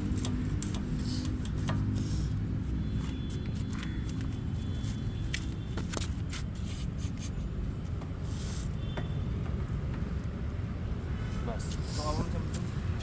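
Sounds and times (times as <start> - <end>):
sharp clicks and light scrapes: 0.0 - 2.0.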